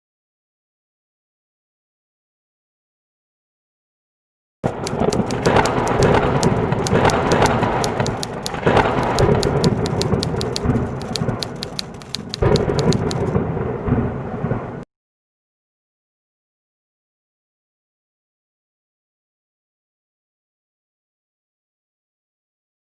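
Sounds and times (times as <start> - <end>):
low thunder rumble: 13.3 - 14.8.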